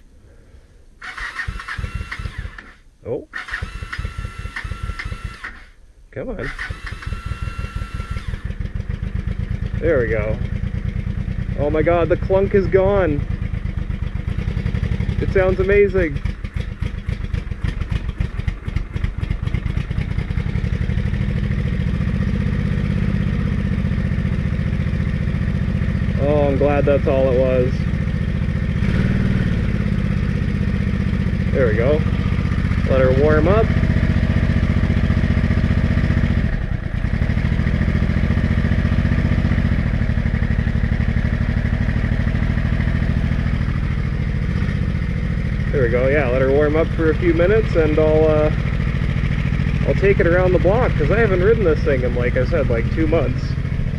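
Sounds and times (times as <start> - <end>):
motorcycle engine idling: 0.3 - 53.9.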